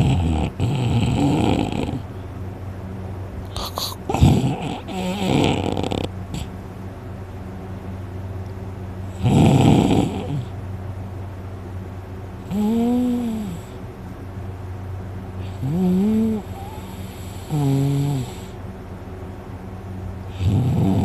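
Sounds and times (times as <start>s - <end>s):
person snoring loudly: 0.0s - 2.0s, 3.5s - 6.5s, 9.2s - 10.5s, 12.5s - 13.8s, 15.4s - 18.6s, 20.3s - 21.0s.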